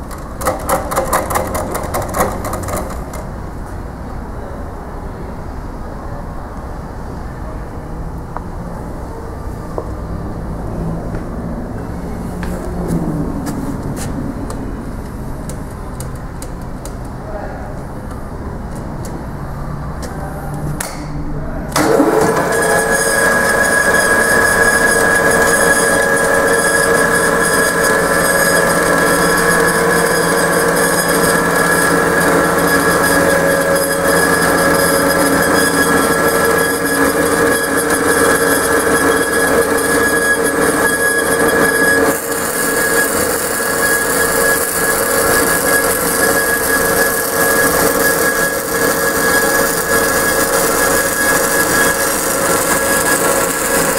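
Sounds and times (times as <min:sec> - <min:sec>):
band saw running with whine: 0:21.8 - 0:53.9.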